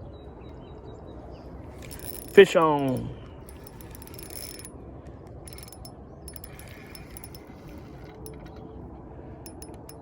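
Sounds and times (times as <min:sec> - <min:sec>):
fishing reel clicking: 0:01.8 - 0:04.7, 0:05.4 - 0:08.6, 0:09.5 - 0:10.0.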